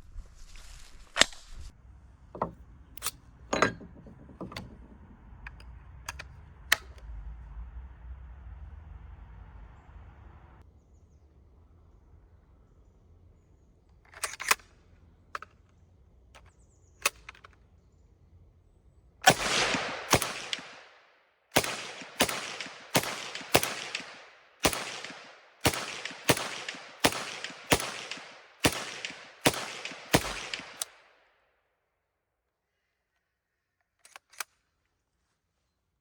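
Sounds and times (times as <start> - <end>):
sharp gun clicks: 5.5 - 7.0, 14.1 - 14.8, 16.4 - 17.6, 19.2 - 21.0, 21.6 - 31.1, 34.0 - 34.6
submachine gun single shots: 19.2 - 31.2.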